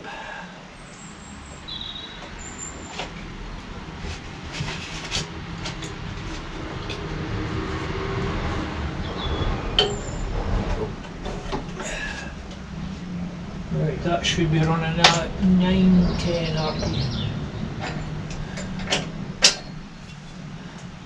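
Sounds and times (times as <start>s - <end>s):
sharp clicks and knocks: 17.8s - 21.0s.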